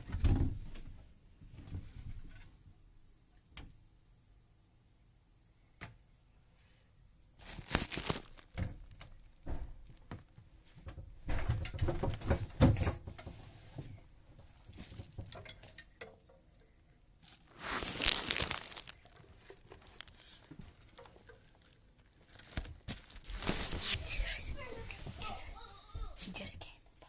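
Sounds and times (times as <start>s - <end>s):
rustling and bumping: 7.4s - 15.8s, 17.3s - 25.5s.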